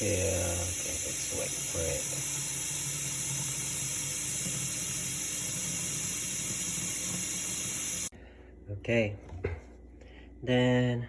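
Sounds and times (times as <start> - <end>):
tap water running into tank: 0.0 - 8.1.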